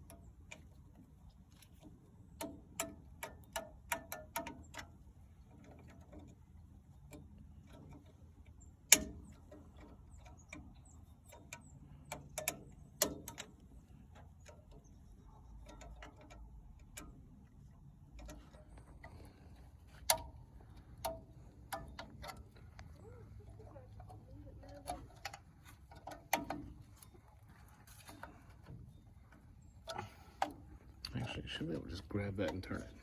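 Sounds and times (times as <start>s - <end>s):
metallic clicks of hand tools: 1.5s - 4.9s, 8.9s - 14.9s, 15.5s - 17.2s, 23.9s - 27.2s, 27.8s - 33.0s.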